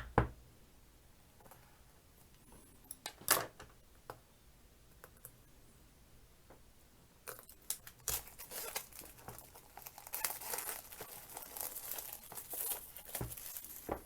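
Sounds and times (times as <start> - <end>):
packaging crinkling and tearing: 7.6 - 14.0.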